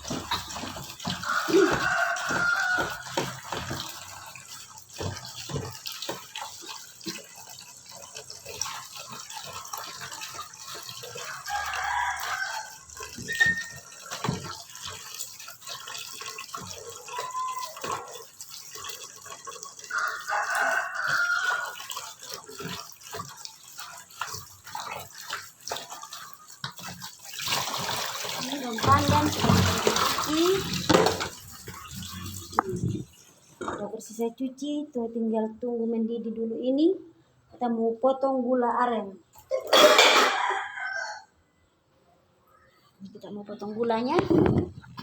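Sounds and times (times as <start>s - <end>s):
leaves washed under running water: 0.0s - 33.5s
water splashing and dripping: 0.0s - 34.3s, 43.0s - 45.0s
rooster crowing: 1.1s - 3.2s, 11.2s - 12.9s, 19.9s - 21.8s, 40.0s - 41.4s.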